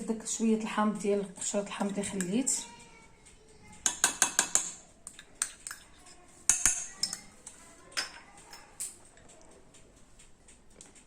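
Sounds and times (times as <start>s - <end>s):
metal spoon clinking on dishes: 1.6s - 2.8s, 3.8s - 9.4s.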